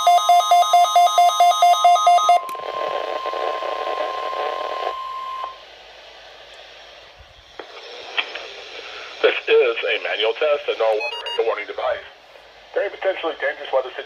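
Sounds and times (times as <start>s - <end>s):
radio static hiss: 2.4s - 14.0s
rapid electronic beeps: 11.0s - 11.5s.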